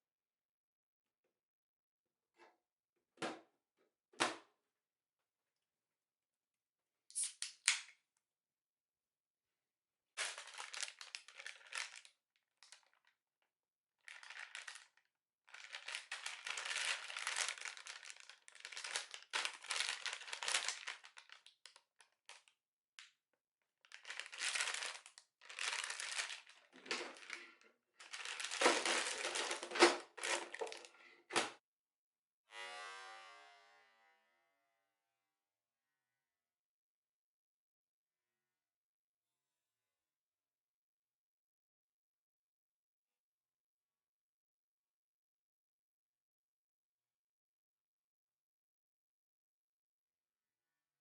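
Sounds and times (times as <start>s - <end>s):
crinkling rustling noise: 10.2s - 13.1s, 14.0s - 22.5s, 23.9s - 31.0s.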